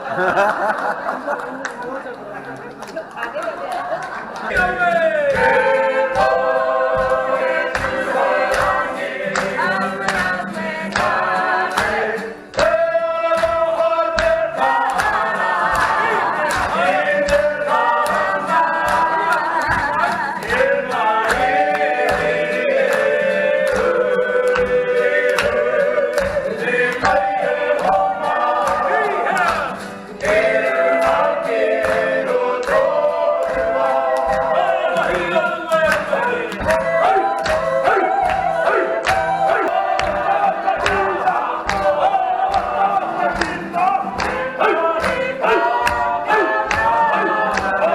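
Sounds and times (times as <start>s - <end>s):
steady rhythmic beat: 4.3s - 47.9s
group singing in harmony: 4.4s - 47.9s.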